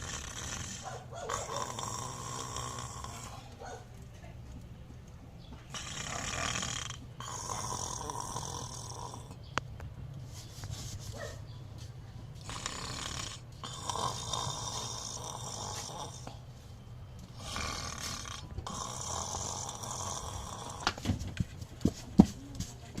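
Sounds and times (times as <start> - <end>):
dog snoring: 0.0 - 3.5, 5.7 - 9.4, 12.4 - 16.4, 17.3 - 21.1.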